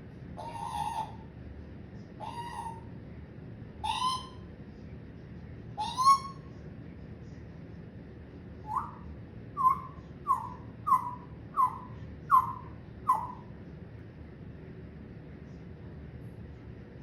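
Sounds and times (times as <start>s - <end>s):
parrot calls: 0.4s - 1.3s, 2.2s - 2.9s, 3.8s - 4.4s, 5.8s - 6.4s, 8.7s - 9.0s, 9.6s - 13.5s.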